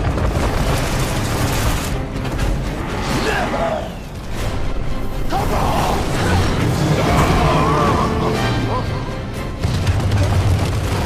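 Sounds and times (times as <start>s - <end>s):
action soundtrack music: 0.0s - 11.0s.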